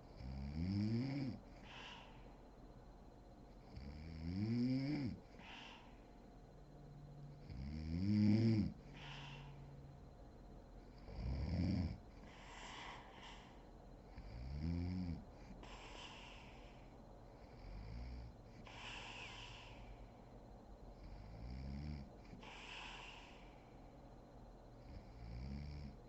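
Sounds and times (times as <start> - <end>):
woman snoring: 0.0 - 2.2, 3.7 - 6.0, 7.5 - 9.7, 11.0 - 20.0, 21.0 - 23.7, 24.8 - 26.0
breathy exhale: 1.6 - 2.5, 5.3 - 6.2, 8.8 - 9.9, 12.2 - 13.8, 15.4 - 17.0, 18.4 - 20.3, 22.3 - 23.9.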